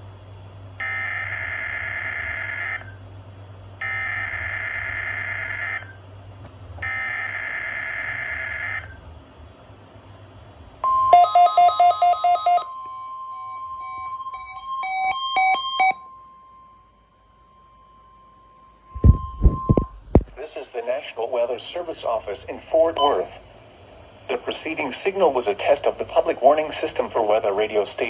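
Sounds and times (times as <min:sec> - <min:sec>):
fast electronic alarm beeping: 0:00.8 - 0:02.9, 0:03.8 - 0:06.0, 0:06.8 - 0:09.0, 0:10.8 - 0:20.0, 0:23.0 - 0:23.3
digital data tone bursts: 0:10.8 - 0:20.6, 0:23.0 - 0:23.3
steady tone: 0:10.8 - 0:20.7.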